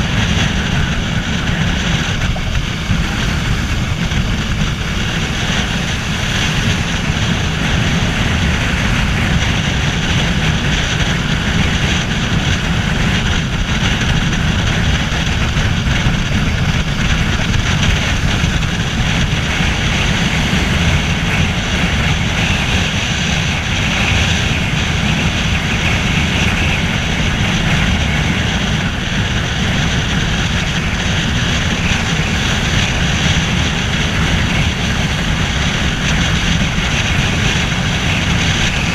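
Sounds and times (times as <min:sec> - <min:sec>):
motorcycle engine cruising: 0:00.0 - 0:38.9
road noise: 0:00.0 - 0:38.9
wind rush on microphone: 0:00.0 - 0:38.9.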